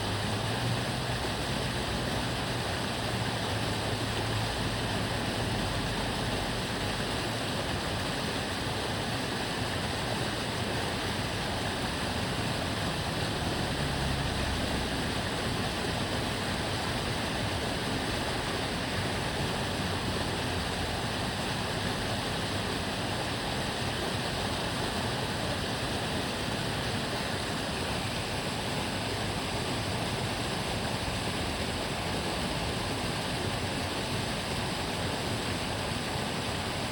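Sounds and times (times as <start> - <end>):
water babbling in stream: 0.0 - 36.9.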